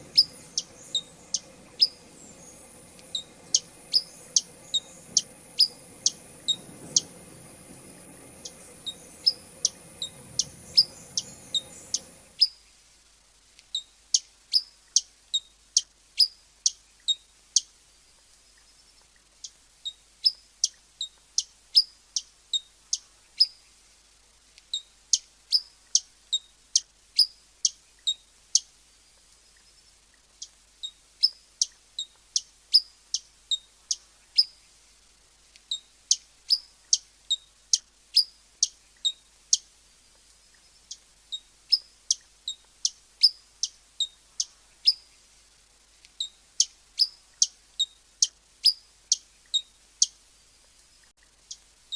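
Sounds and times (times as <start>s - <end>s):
hummingbird chip calls: 0.0s - 12.6s, 40.8s - 45.1s, 46.2s - 50.2s
background hiss and hum: 0.0s - 51.9s.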